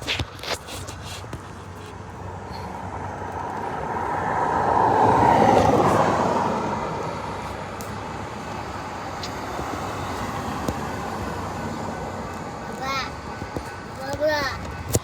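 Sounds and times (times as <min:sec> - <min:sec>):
vehicle passing close by: 0:02.0 - 0:13.3.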